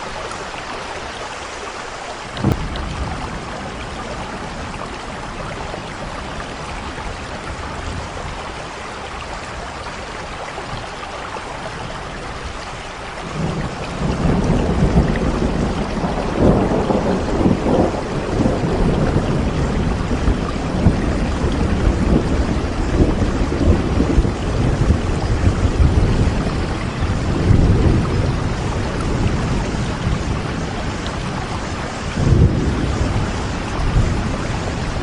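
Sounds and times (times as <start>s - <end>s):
steady rain falling: 0.0s - 35.0s
thunder rumbling: 2.3s - 10.0s, 13.2s - 35.0s.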